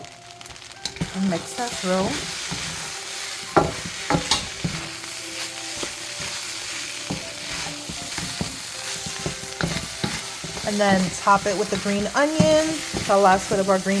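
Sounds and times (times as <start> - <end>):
rice sizzling in a hot pan: 0.0 - 14.0
utensil scraping and knocking pan: 3.5 - 5.0, 7.0 - 13.8.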